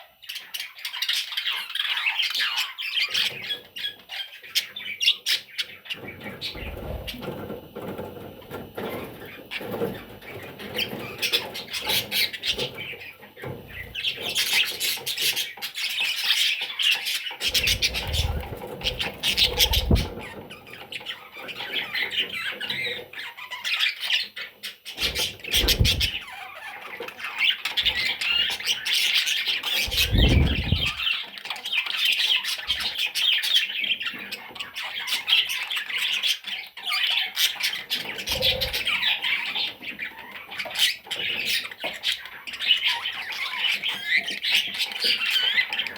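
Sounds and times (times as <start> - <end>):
budgie chicks squawking: 0.2 - 45.9
dull thumps: 25.5 - 26.2
rustles and clicks: 29.8 - 31.1.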